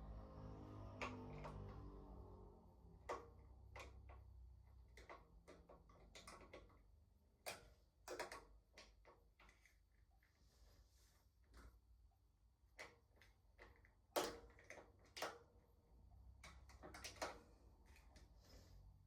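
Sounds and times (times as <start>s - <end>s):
faint clicks and light knocks: 3.1s - 10.4s.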